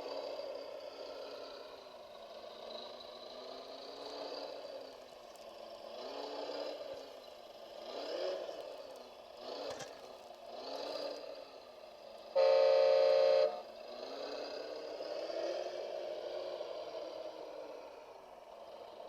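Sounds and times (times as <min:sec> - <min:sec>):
loud horn blast: 0:12.4 - 0:13.7.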